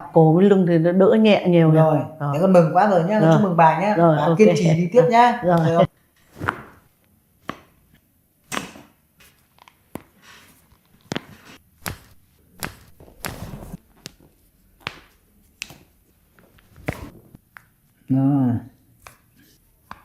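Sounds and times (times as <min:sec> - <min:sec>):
body cracks and slaps: 0:07.4 - 0:07.8, 0:08.4 - 0:09.0, 0:11.0 - 0:14.2, 0:14.8 - 0:16.0, 0:16.6 - 0:17.8, 0:19.0 - 0:20.0
short rubbing sound: 0:11.4 - 0:13.8.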